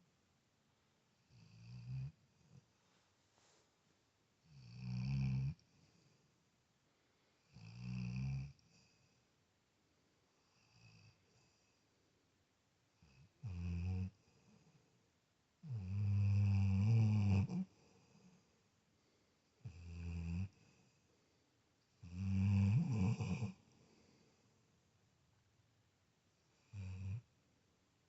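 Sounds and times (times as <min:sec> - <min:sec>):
dog snoring: 0:01.2 - 0:02.6, 0:04.4 - 0:06.1, 0:07.5 - 0:09.2, 0:10.4 - 0:11.8, 0:13.0 - 0:14.8, 0:15.6 - 0:18.4, 0:19.6 - 0:20.9, 0:22.0 - 0:23.7, 0:26.6 - 0:27.3.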